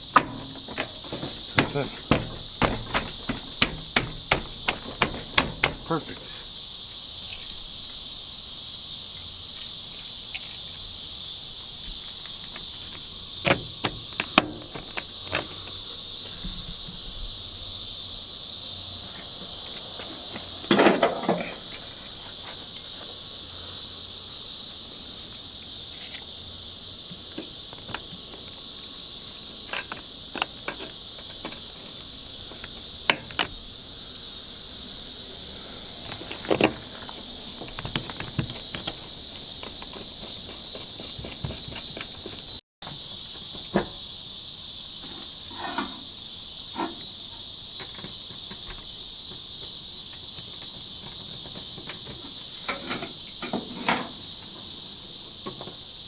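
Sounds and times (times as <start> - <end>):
knocks and clicks on truck door: 0.0 - 6.1, 13.4 - 15.5
crickets chirping: 0.0 - 56.0.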